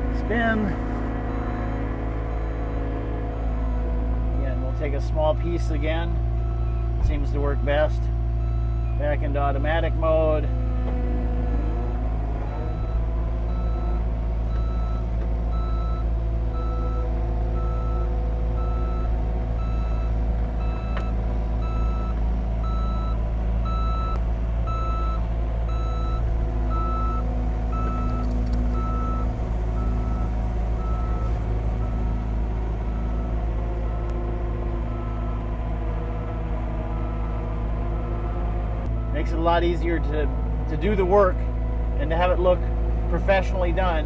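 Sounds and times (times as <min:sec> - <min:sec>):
backup alarm beeping: 0:00.0 - 0:03.8, 0:14.5 - 0:35.5
diesel engine running under load: 0:00.0 - 0:44.0.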